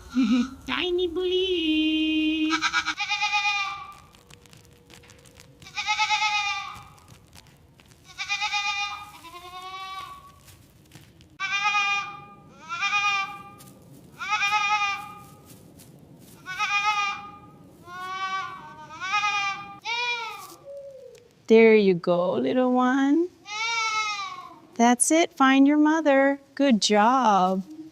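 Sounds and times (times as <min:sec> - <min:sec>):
goats bleating: 0:02.4 - 0:04.4, 0:05.3 - 0:10.6, 0:11.4 - 0:15.3, 0:16.4 - 0:20.6, 0:23.4 - 0:24.6.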